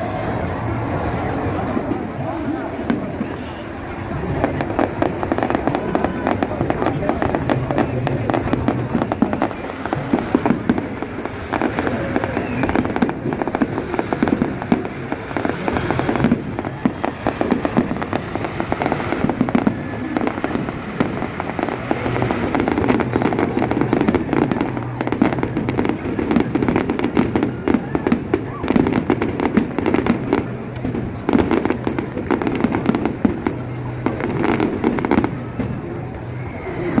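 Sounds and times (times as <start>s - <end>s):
fireworks bangs and crackling: 0.0s - 37.0s.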